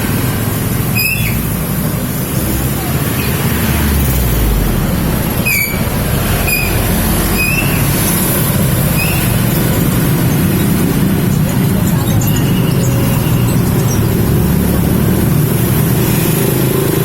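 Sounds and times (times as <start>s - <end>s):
loud background rumble: 0.0s - 17.0s
bird chirping: 1.0s - 1.5s, 5.3s - 15.4s.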